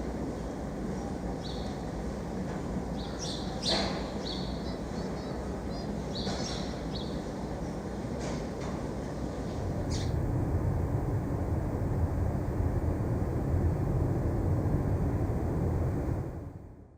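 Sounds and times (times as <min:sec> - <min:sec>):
distant traffic rumble: 0:09.3 - 0:16.8.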